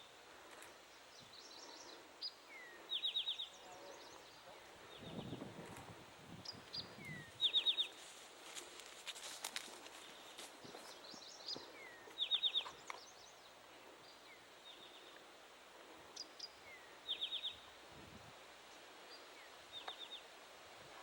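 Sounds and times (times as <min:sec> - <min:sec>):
songbird singing: 0:00.0 - 0:18.0, 0:18.6 - 0:21.0
faint bird chirps: 0:00.9 - 0:05.5, 0:10.0 - 0:15.3.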